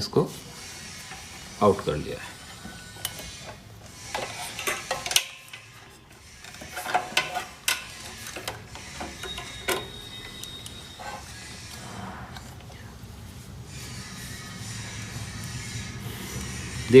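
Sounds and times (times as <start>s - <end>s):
small tools clicking and tapping: 2.6s - 11.3s.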